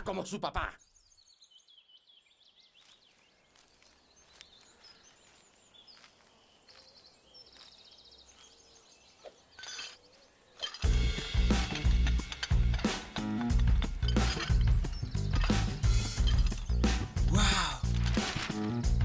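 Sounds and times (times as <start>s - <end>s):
small birds chirping: 0.0s - 19.0s
bird trills: 6.7s - 17.0s.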